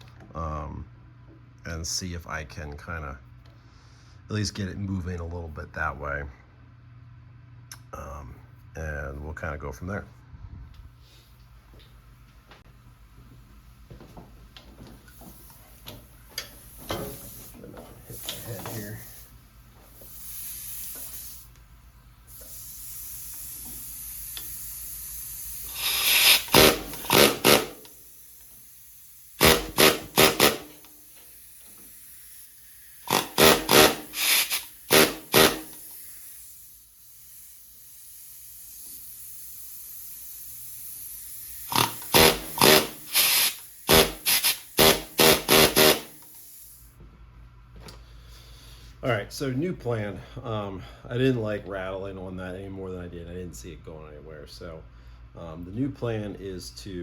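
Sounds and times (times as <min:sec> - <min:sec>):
steady air hiss: 0:14.5 - 0:47.0
air hammer rattling on metal: 0:25.7 - 0:27.9, 0:29.4 - 0:30.9, 0:33.1 - 0:35.9, 0:41.7 - 0:46.2.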